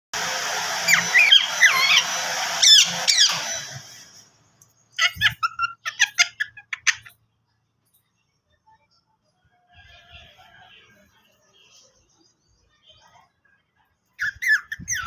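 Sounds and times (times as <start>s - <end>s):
parakeet chattering: 0.9s - 3.5s, 5.0s - 7.2s, 14.2s - 15.0s
parakeet squeaks: 0.9s - 3.8s, 5.0s - 7.2s, 14.2s - 15.0s.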